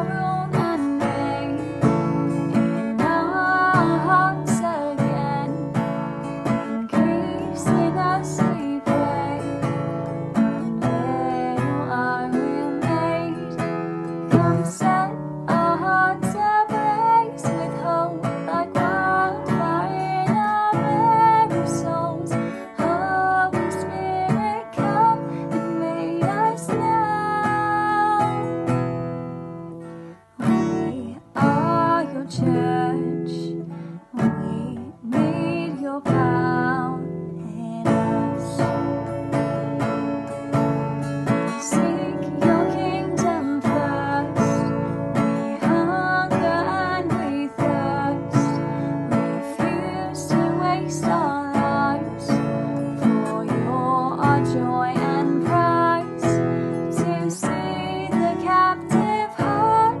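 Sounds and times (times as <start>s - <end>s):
acoustic guitar strumming: 0.0s - 60.0s.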